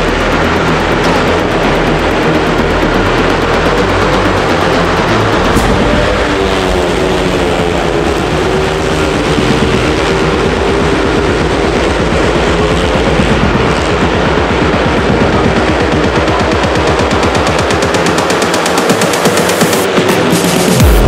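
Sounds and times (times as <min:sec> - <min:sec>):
motorcycle engines racing: 0:00.0 - 0:21.0.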